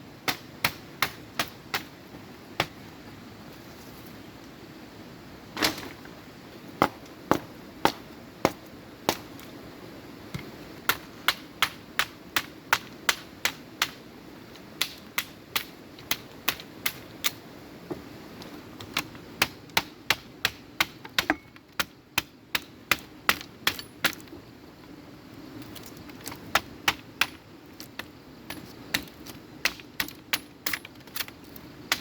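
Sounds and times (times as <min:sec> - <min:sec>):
tool knocking on bamboo: 0:06.8 - 0:08.6.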